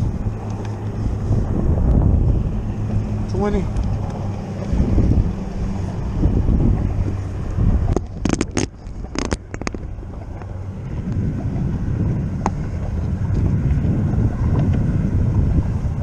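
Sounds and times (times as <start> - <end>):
wind buffeting microphone: 0.0 - 16.0
sharp clicks and knocks: 7.9 - 10.5.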